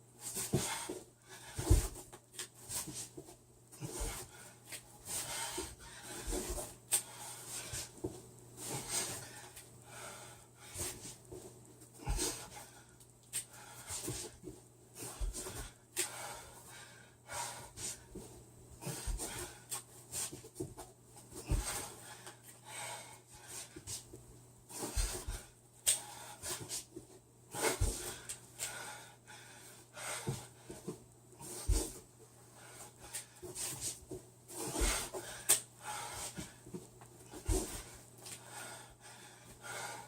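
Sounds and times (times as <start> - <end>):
person panting heavily: 3.8 - 7.9, 12.0 - 12.9, 18.8 - 19.7, 27.5 - 30.8, 34.6 - 36.7, 37.3 - 40.0.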